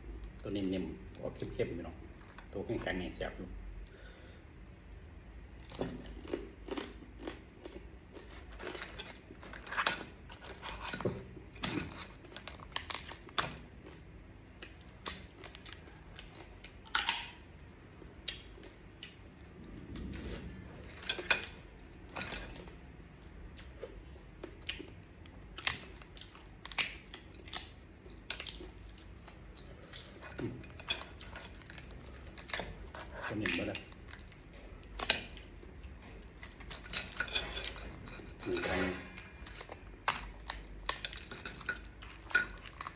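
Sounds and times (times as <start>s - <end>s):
chewing: 5.8s - 14.0s, 14.6s - 38.5s, 39.2s - 42.9s
crab shell cracking: 14.6s - 17.6s.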